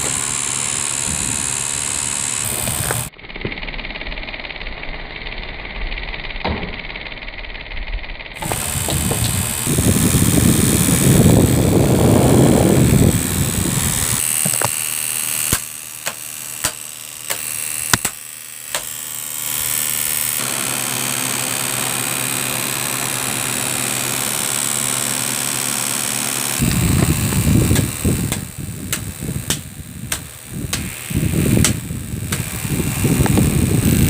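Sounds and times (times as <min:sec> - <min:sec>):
electric fan running: 0:00.0 - 0:34.0
air rumble on microphone: 0:08.4 - 0:14.2, 0:26.6 - 0:34.0.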